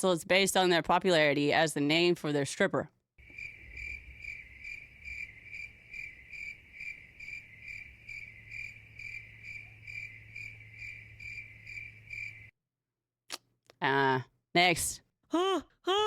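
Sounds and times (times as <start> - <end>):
cricket chirping: 3.2 - 12.5.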